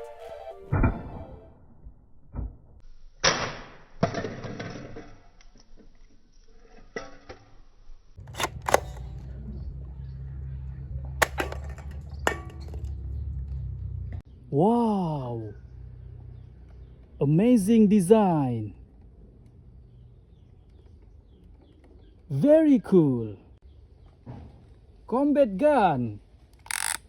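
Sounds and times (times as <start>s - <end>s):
steady low hum: 8.2s - 14.4s
plastic trigger clicks: 26.5s - 27.0s
toy gun electronic shooting sounds: 26.6s - 27.0s.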